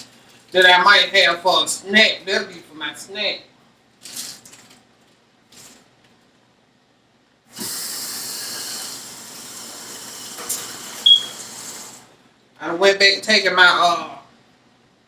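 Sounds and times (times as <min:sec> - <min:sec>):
tap water running into sink: 0:07.6 - 0:12.0.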